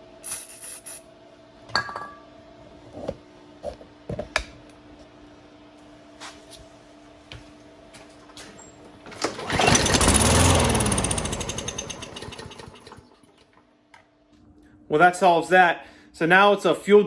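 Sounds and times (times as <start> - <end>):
lawn mower engine starting and running: 9.0 - 13.4.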